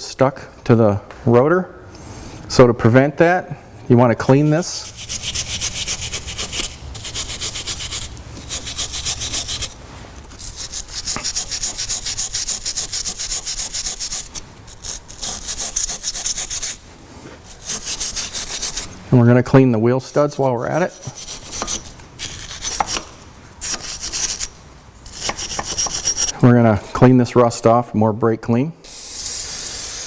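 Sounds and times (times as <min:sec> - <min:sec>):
scrubbing rust off metal: 0:04.2 - 0:19.0, 0:20.2 - 0:27.1.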